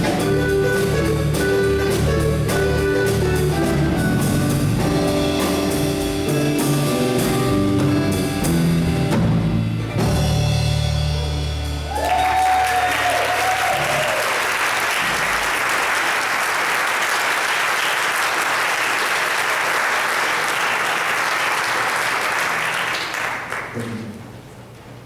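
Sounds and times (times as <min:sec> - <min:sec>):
held music chord: 0:00.0 - 0:11.9
crowd applauding: 0:11.8 - 0:24.2
person cheering: 0:11.9 - 0:14.5.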